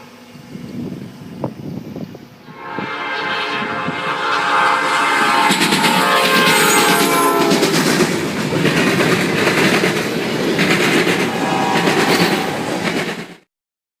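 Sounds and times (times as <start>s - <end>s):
train wheels clattering: 5.1s - 13.5s.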